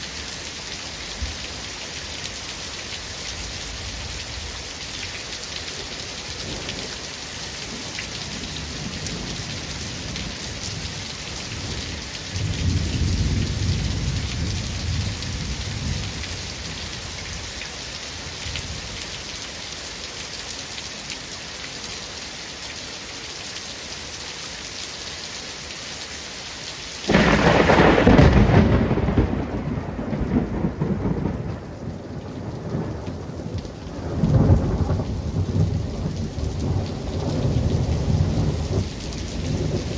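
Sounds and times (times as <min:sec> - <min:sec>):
steady rain falling: 0:00.0 - 0:39.9
rolling thunder: 0:27.1 - 0:39.9.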